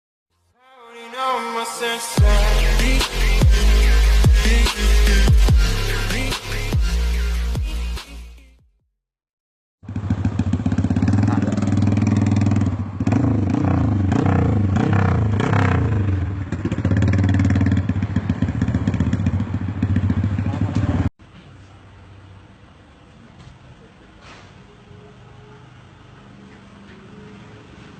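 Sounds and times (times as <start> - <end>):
motorcycle revving: 9.8 - 21.1.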